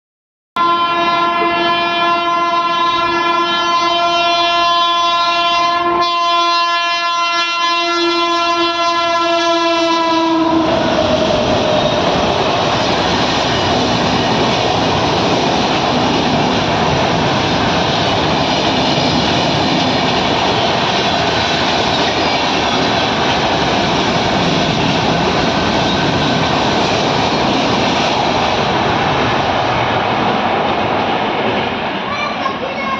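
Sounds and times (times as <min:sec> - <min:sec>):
train horn: 0:00.6 - 0:11.2
train coaches clattering by: 0:09.7 - 0:32.9.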